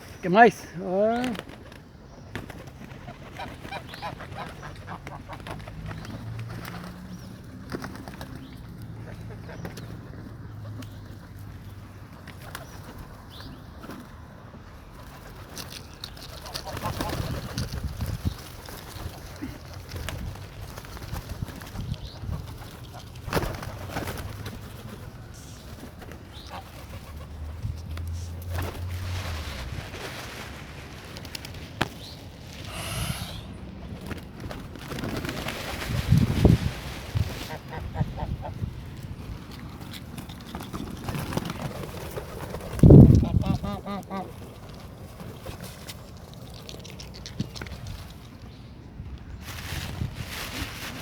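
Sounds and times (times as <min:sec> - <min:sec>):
birds calling: 0:00.0 - 0:14.1, 0:14.9 - 0:28.7, 0:31.8 - 0:34.6
geese and ducks calling: 0:03.0 - 0:05.6, 0:26.3 - 0:27.4, 0:43.2 - 0:44.5
pigeon-like cooing: 0:32.7 - 0:33.8.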